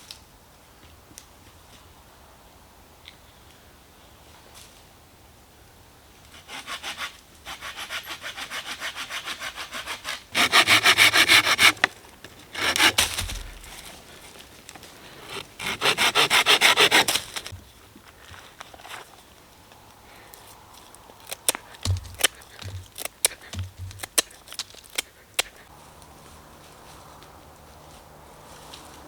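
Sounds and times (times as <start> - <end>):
hand saw cutting wood: 6.3 - 17.6, 21.3 - 25.7
wood cracking: 10.4 - 17.7, 21.2 - 25.7
low thump: 23.6 - 24.1.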